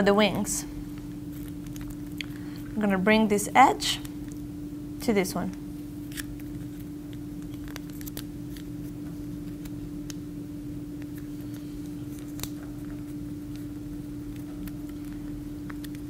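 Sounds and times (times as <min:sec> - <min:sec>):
steady low hum: 0:00.0 - 0:16.0
paper folding crackles: 0:00.9 - 0:02.8, 0:06.0 - 0:10.2, 0:11.0 - 0:16.0.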